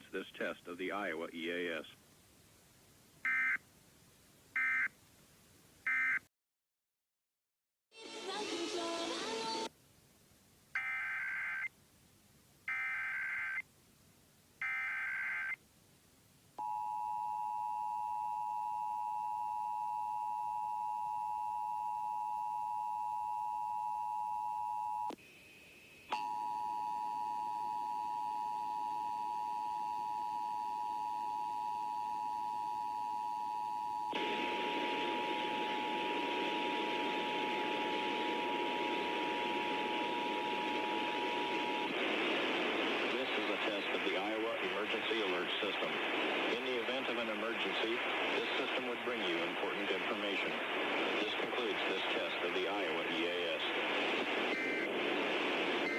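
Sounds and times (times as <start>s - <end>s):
radio static hiss: 0.0s - 2.1s, 34.1s - 55.9s.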